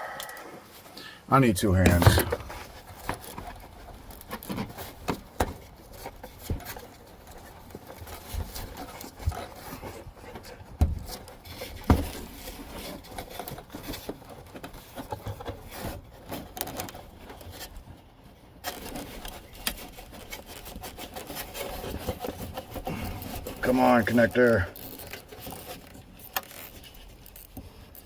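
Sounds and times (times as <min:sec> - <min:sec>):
sharp knocks: 0:01.8 - 0:02.7
hands rubbing plastic connector: 0:18.6 - 0:28.0.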